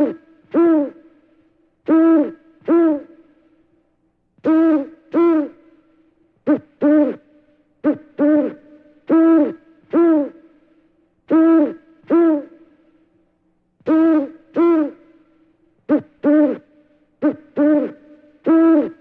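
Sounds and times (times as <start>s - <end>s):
bird hooting calls: 0.0s - 1.2s, 1.9s - 3.2s, 4.4s - 5.6s, 6.5s - 10.6s, 11.3s - 12.7s, 13.8s - 15.3s, 15.9s - 19.0s.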